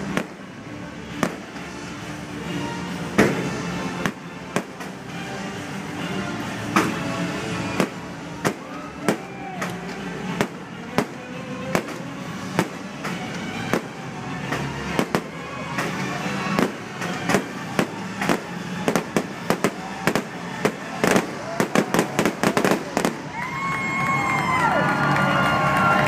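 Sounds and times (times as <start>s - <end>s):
fireworks bangs: 0.0s - 1.9s, 3.0s - 5.1s, 6.6s - 23.7s
music playing: 0.0s - 26.0s.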